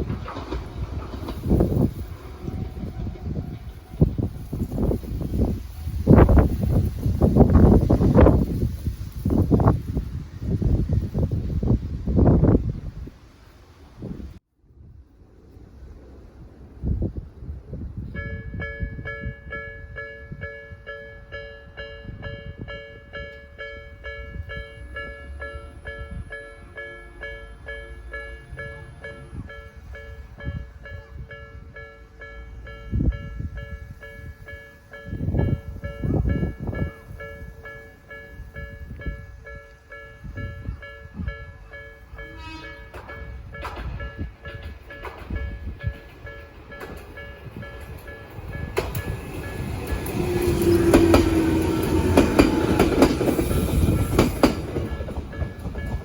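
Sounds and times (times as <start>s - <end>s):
train wheels clicking over rail joints: 0.0s - 11.7s, 32.1s - 56.0s
level crossing warning bell: 18.1s - 53.4s, 54.7s - 56.0s.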